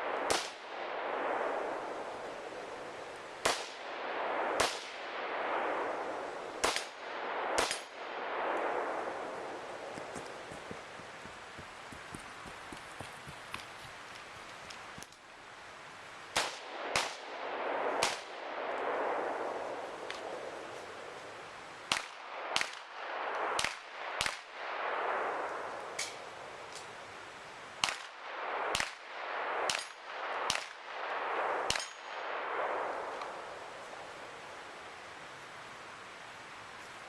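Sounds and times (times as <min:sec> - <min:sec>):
gunshots: 0:00.0 - 0:02.2, 0:03.4 - 0:11.4, 0:16.3 - 0:20.5, 0:21.9 - 0:26.0, 0:27.8 - 0:33.5.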